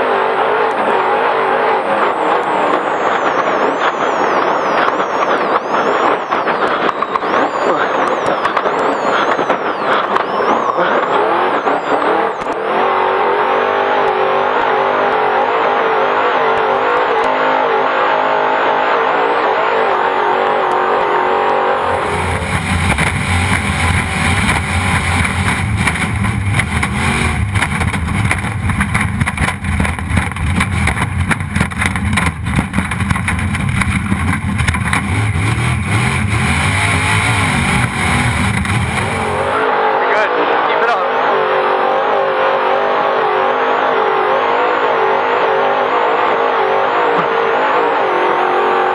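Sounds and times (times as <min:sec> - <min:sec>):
rattle and rush of rough ride: 0:00.0 - 0:19.5, 0:21.4 - 0:48.9
truck engine running hard: 0:00.0 - 0:48.9
engine with constant knocking clatter: 0:21.8 - 0:39.6.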